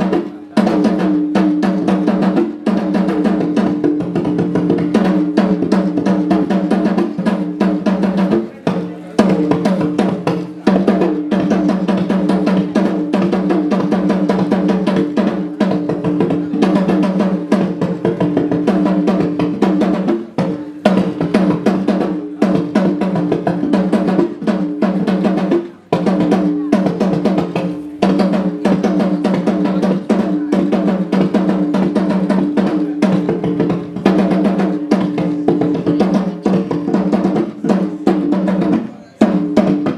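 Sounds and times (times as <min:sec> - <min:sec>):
fast drumming and percussion: 0:00.0 - 0:39.9
voices: 0:08.0 - 0:13.1, 0:32.4 - 0:39.5.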